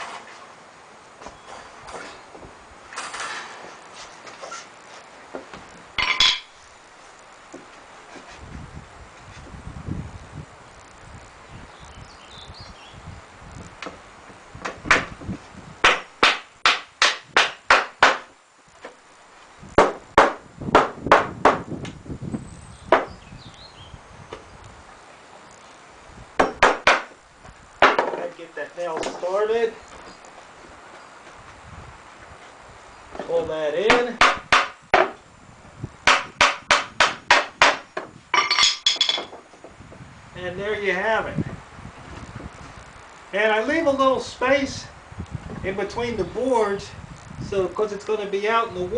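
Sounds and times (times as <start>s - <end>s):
hammer driving nails into wood: 15.8s - 18.3s, 26.4s - 27.2s, 33.9s - 35.2s, 36.0s - 39.3s.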